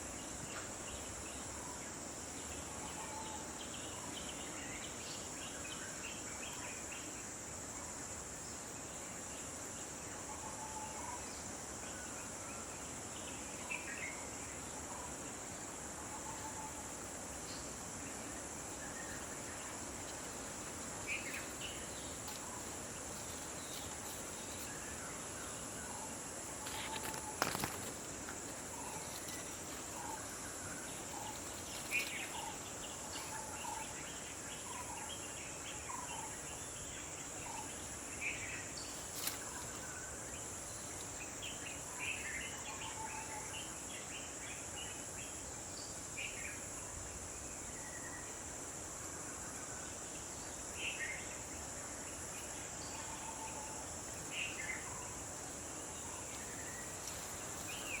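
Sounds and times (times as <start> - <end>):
high insect drone: 0.0 - 58.0.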